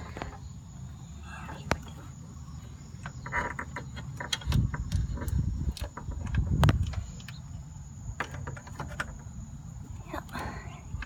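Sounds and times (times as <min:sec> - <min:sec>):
clicks and knocks on clutch cable: 0:03.0 - 0:07.4, 0:08.2 - 0:09.3.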